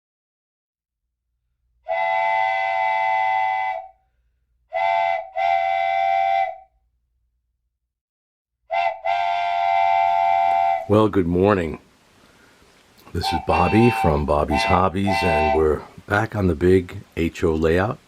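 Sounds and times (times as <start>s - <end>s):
train whistle blasts: 1.8s - 4.1s, 4.7s - 6.7s, 8.7s - 11.0s, 13.2s - 15.9s.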